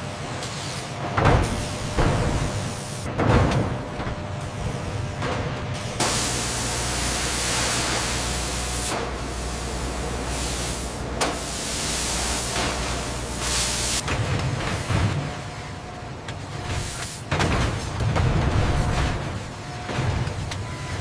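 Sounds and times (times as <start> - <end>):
low machine hum: 1.0 - 21.0
spray-like hiss: 6.0 - 14.0.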